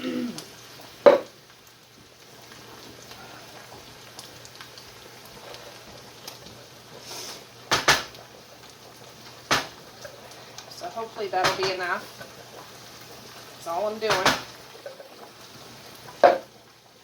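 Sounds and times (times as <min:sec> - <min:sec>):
food hissing in a pot: 0:00.0 - 0:17.0.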